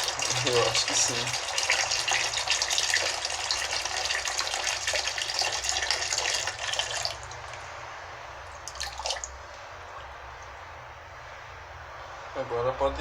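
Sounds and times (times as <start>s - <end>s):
tap water splashing into container: 0.0s - 7.6s, 8.5s - 9.4s.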